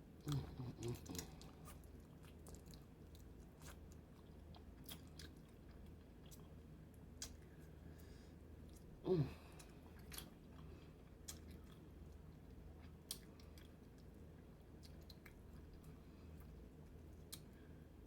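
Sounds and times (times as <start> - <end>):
person humming mm: 0.2 - 1.4, 9.0 - 9.6
chewing crab with crunches: 0.2 - 17.6.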